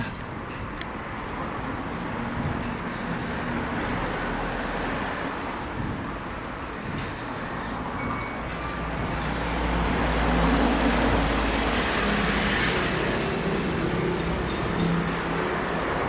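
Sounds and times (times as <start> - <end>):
vehicle passing on road: 7.8 - 16.0.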